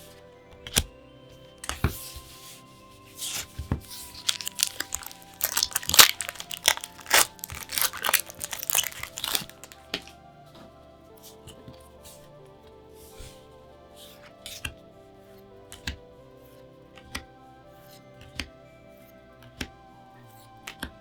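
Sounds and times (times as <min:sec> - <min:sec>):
soft background music: 0:00.0 - 0:21.0
packaging wrapper tearing and crinkling: 0:03.9 - 0:10.1.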